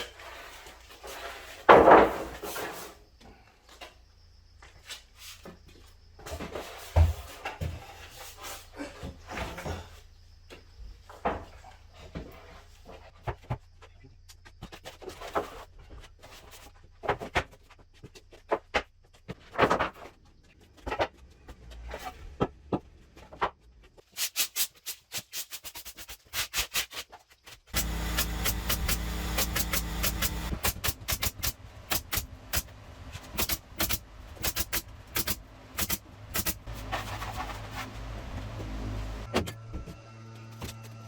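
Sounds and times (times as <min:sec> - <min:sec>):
wood and tools being handled: 0:35.2 - 0:38.6.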